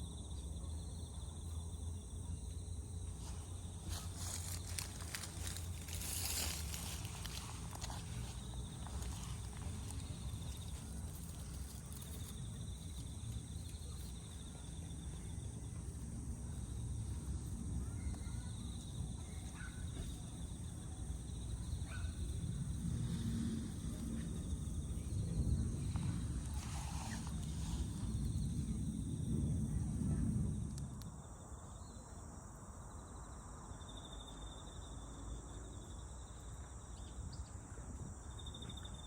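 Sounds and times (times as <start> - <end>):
low rumble: 20.4 - 31.4.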